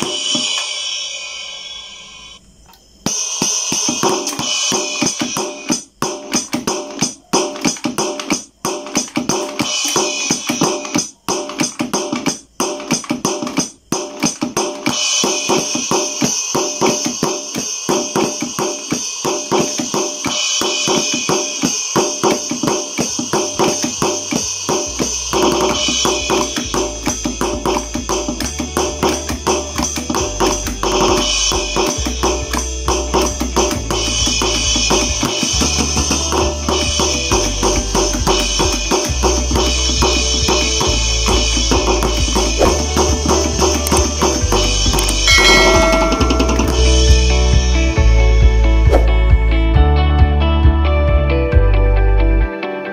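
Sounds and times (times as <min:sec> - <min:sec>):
drum beat: 0:03.1 - 0:47.3
tambourine-like jingles: 0:03.1 - 0:47.8
bass line: 0:24.2 - 0:52.5.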